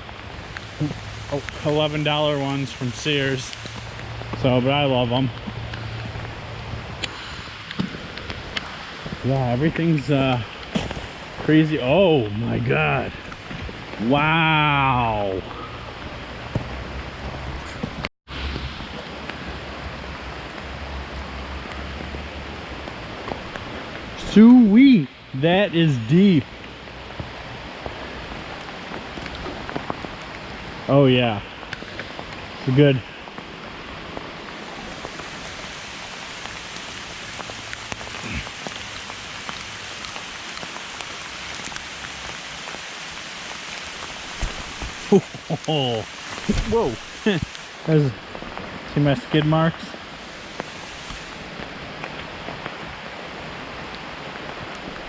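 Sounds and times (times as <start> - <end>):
flooded creek rushing: 0.0 - 55.0
heavy rain: 0.0 - 55.0
wind rumble on microphone: 2.8 - 11.5.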